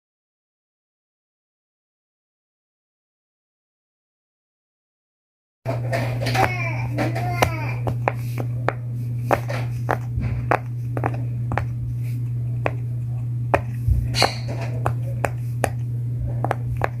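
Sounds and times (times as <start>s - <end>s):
steady low hum: 5.7s - 17.0s
sharp taps: 6.3s - 11.8s, 13.5s - 15.8s, 16.4s - 17.0s.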